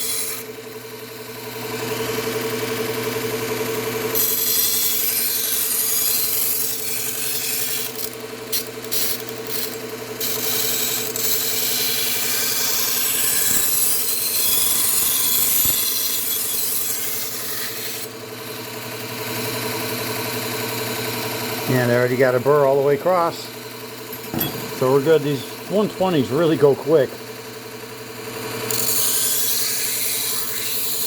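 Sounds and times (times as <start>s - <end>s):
knife grinding on belt sharpener: 0.0s - 1.8s, 4.1s - 18.8s, 28.5s - 31.0s.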